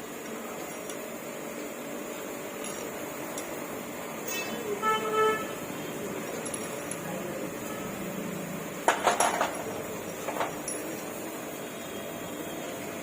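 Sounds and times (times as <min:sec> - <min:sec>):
steady background noise: 0:00.0 - 0:13.0
metal parts clinking: 0:00.2 - 0:01.1, 0:02.6 - 0:03.6, 0:06.2 - 0:07.4, 0:08.9 - 0:11.2.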